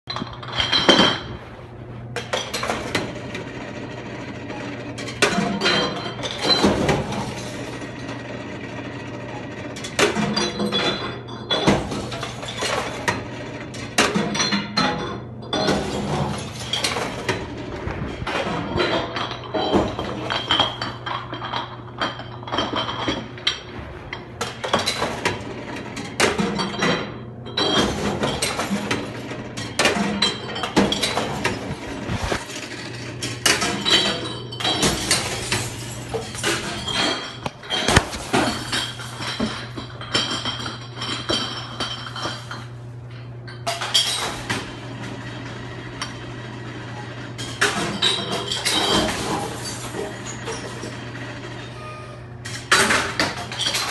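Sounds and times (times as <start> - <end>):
glass bottles smashing: 33.5 - 42.6, 47.7 - 50.6.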